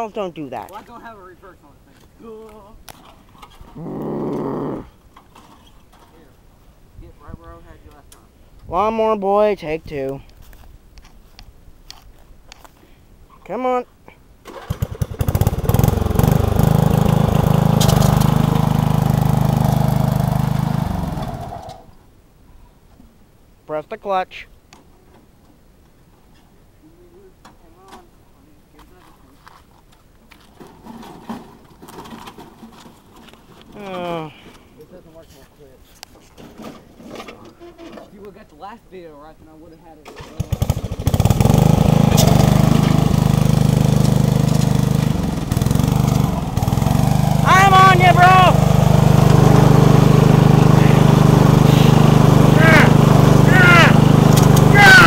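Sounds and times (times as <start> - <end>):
lawnmower engine running: 14.4 - 21.9, 40.1 - 55.0.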